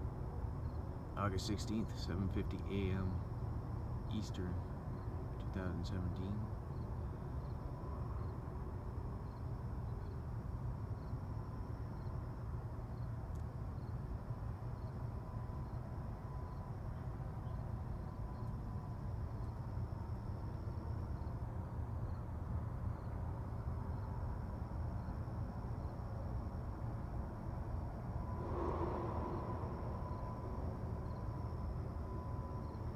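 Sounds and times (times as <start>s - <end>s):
faint high insect trill: 0.0s - 32.9s
steady low rumble: 27.6s - 32.9s.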